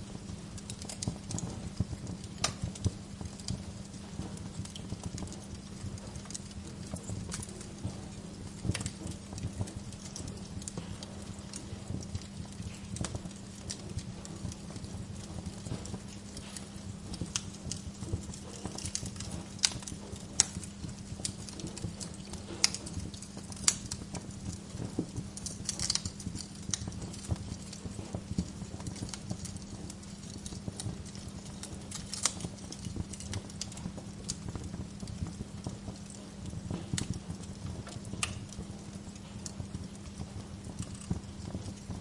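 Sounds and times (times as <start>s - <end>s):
wood fire crackling: 0.0s - 42.0s
wood popping: 0.6s - 41.9s.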